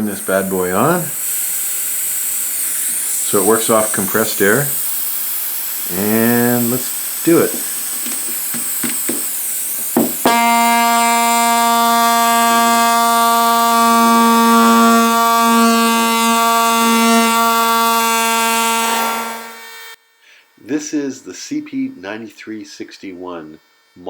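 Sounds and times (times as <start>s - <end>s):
compressed air hiss: 0.0s - 23.1s
air scribe buzzing: 0.0s - 24.0s
tool clicks: 7.4s - 10.4s.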